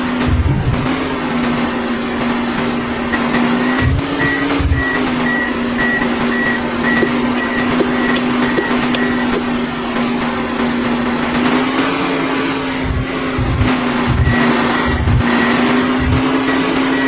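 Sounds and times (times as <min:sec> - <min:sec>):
engine humming: 0:00.0 - 0:17.0
reversing alarm beeping: 0:03.1 - 0:09.5, 0:13.4 - 0:17.0.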